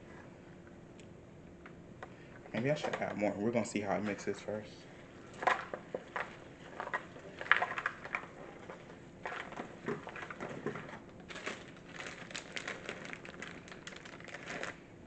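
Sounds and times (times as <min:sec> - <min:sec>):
dough being mixed in bowl: 0:05.0 - 0:13.0.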